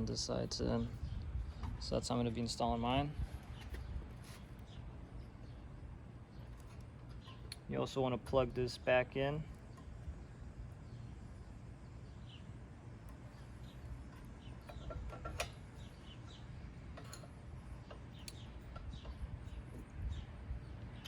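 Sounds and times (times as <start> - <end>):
light clicks and clinks: 16.9 - 19.9.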